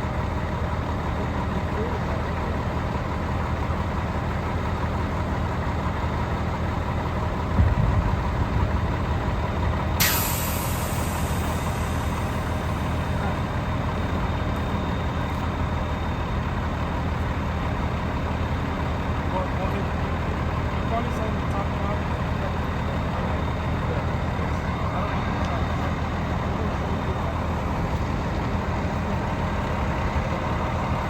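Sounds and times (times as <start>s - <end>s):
heavy truck engine idling: 0.0s - 31.0s
air brake hiss: 10.0s - 13.2s.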